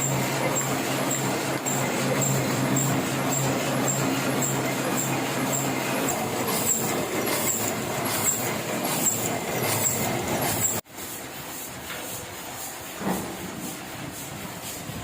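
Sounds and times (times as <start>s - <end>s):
printing press clattering: 0.0s - 10.8s
quieter machine running: 0.0s - 11.6s.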